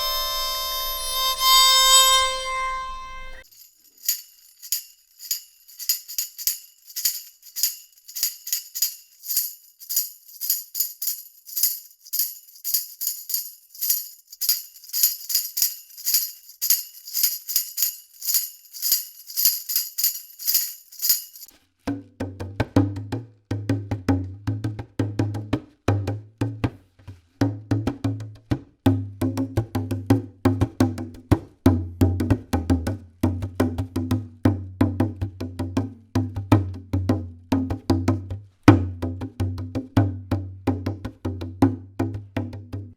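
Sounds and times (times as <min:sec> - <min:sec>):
fiddle note: 0:00.0 - 0:03.4
hollow knocking percussion: 0:00.0 - 0:03.4
tambourine shakes and strikes: 0:00.0 - 0:21.5.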